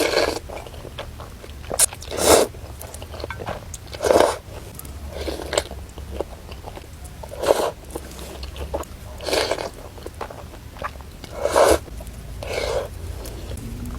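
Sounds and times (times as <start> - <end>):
chewing noodles: 0.0 - 13.9.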